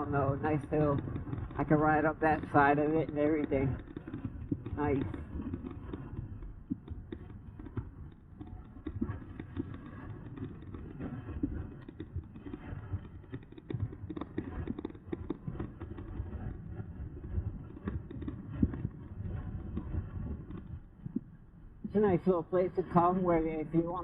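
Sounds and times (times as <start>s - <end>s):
bike rattling over bumps: 0.0s - 24.0s
wind rumbling on microphone: 0.0s - 24.0s.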